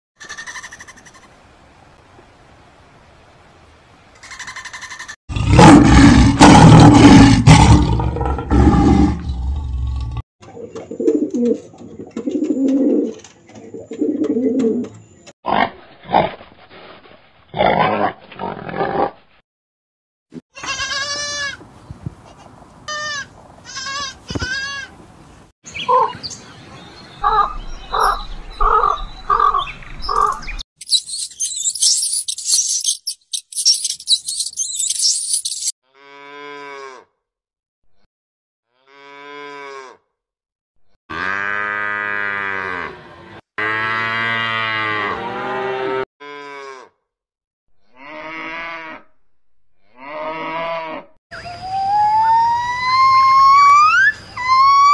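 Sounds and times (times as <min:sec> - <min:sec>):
deep animal roar: 0:05.3 - 0:10.2
bird calls: 0:25.7 - 0:35.7
repeated animal calls: 0:27.2 - 0:37.0
high rapid chirping: 0:30.8 - 0:35.7.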